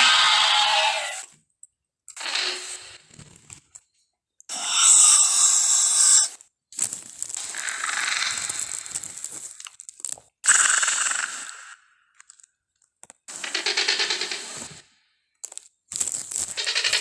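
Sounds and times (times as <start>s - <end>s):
harsh shrill dinosaur calls: 0.0s - 1.2s, 4.5s - 6.3s.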